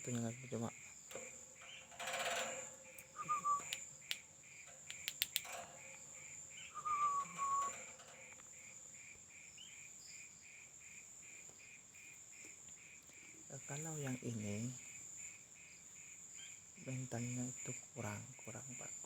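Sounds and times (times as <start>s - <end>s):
constant high whine: 0.0s - 10.2s
cricket chirping: 0.0s - 19.0s
sharp clicks: 2.9s - 6.0s
short falling whistled note: 3.2s - 3.7s, 6.7s - 7.8s.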